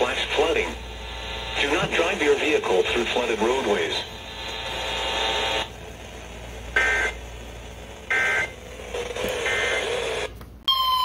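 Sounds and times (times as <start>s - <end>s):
radio hiss: 0.0s - 5.8s
two-tone digital squawks: 6.8s - 7.2s.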